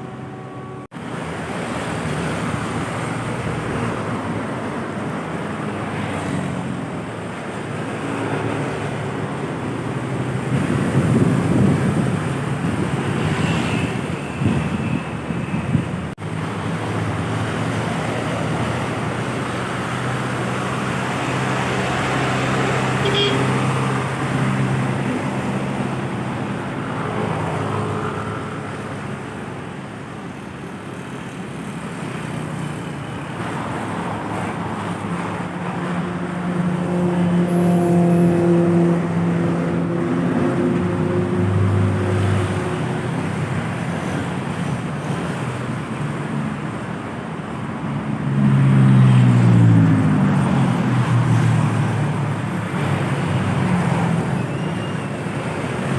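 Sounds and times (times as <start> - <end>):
heavy vehicles passing: 0.0 - 55.9.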